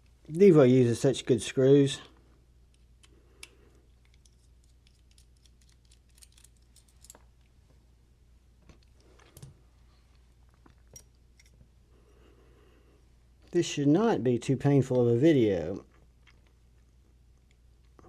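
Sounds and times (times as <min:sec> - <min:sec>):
small metallic clicks and ticks: 0:02.7 - 0:07.5, 0:10.7 - 0:11.6.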